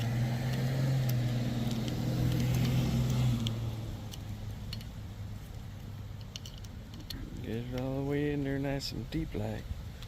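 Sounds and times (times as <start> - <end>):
vehicle engine humming: 0.0 - 10.0
wiper blade clicks: 0.4 - 4.9.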